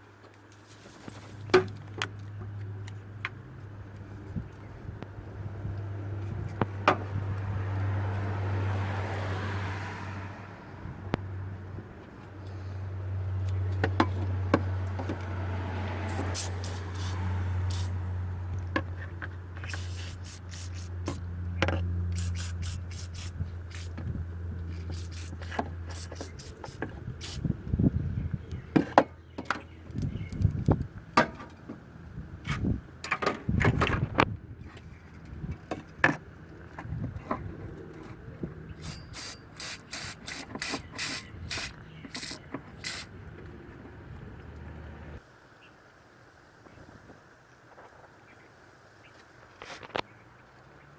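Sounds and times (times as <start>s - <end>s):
handling clicks and scrapes: 0.2s - 5.1s, 18.5s - 27.5s, 32.4s - 43.1s, 49.2s - 50.1s
car engine humming: 1.2s - 33.0s
aerosol spray hissing: 16.1s - 18.0s, 19.7s - 21.0s, 22.2s - 23.9s
knocks and scrapes: 18.6s - 19.8s.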